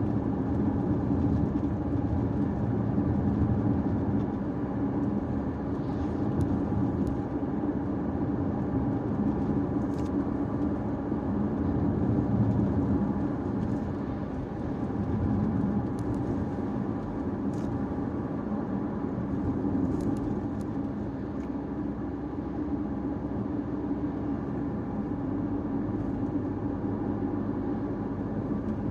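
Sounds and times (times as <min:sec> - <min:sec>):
car engine running: 0:00.0 - 0:28.9
tyre noise on road: 0:00.0 - 0:28.9.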